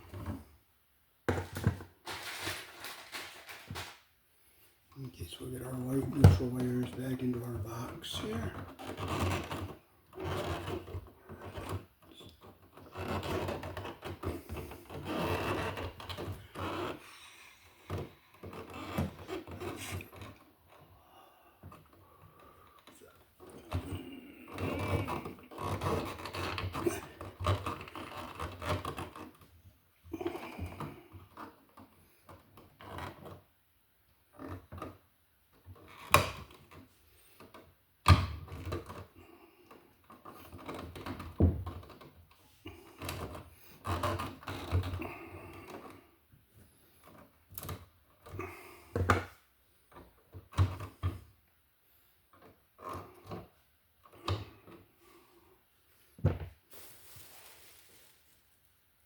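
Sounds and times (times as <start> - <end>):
wires rubbing and scraping: 1.3 - 4.1, 4.9 - 20.9, 21.7 - 33.4, 38.5 - 51.2.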